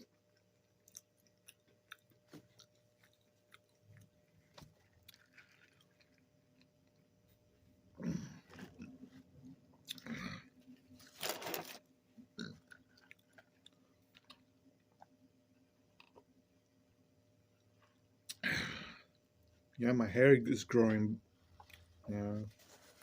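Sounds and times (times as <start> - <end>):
person chewing crunchy food: 0.0 - 15.2, 15.8 - 16.4.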